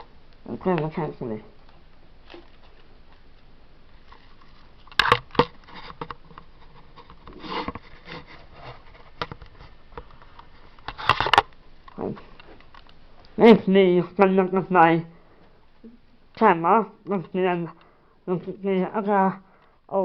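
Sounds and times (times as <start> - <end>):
objects handled with clicks and taps: 4.4 - 13.4.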